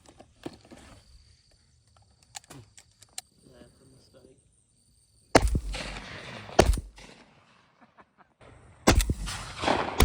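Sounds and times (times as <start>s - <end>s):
shotgun blasts echoing: 5.4s - 7.6s, 8.8s - 10.0s.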